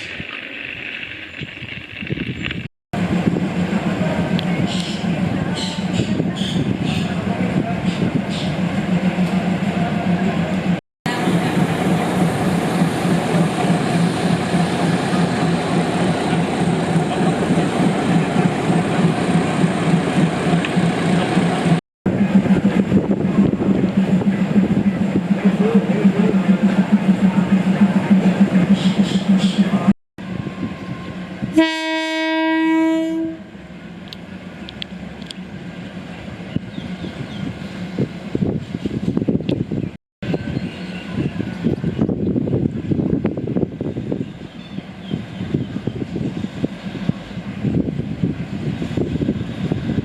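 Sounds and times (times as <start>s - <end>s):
rail noise: 0.0s - 50.0s
train engine drone: 3.0s - 50.0s
train horn blast: 30.3s - 33.6s.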